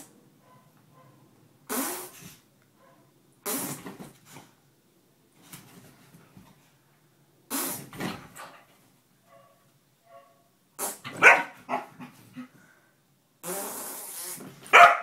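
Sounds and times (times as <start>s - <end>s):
farts: 1.7s - 2.4s, 3.4s - 4.0s, 7.5s - 8.2s, 10.8s - 11.1s, 13.4s - 14.7s.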